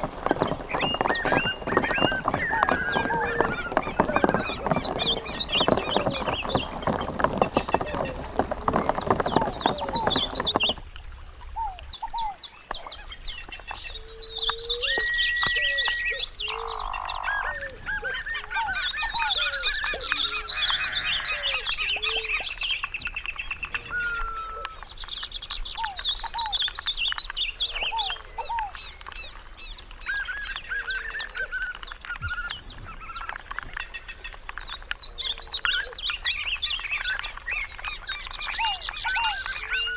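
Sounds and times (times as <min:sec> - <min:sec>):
wild birds chirping and calling: 0:00.0 - 0:10.8, 0:35.1 - 0:39.9.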